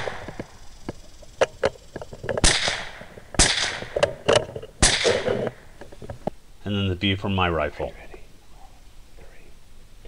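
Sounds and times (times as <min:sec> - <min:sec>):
suppressed rifle shots: 0:00.0 - 0:00.7, 0:02.3 - 0:05.8.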